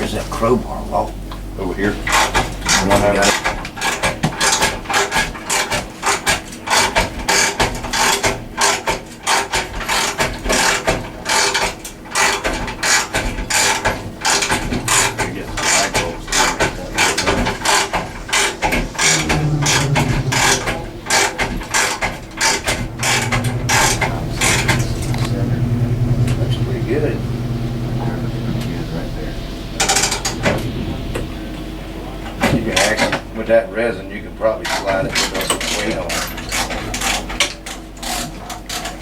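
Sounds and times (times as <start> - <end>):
low hum: 13.6 - 33.0.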